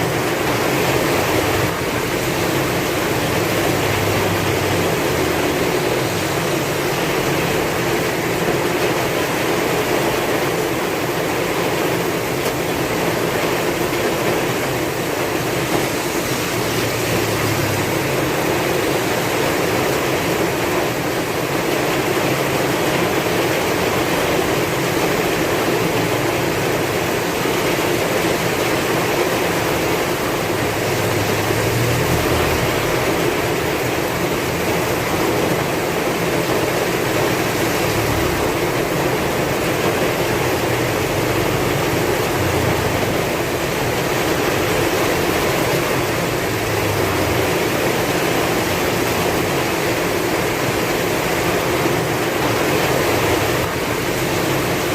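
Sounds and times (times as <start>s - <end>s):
heavy rain hissing: 0.0s - 54.9s.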